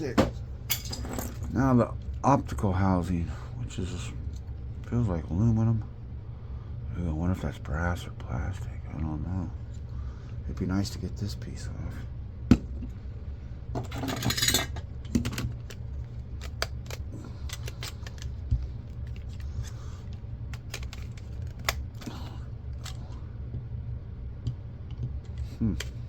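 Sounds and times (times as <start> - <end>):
steady low hum: 0.0 - 26.0
hand tools clicking on small parts: 16.4 - 18.3.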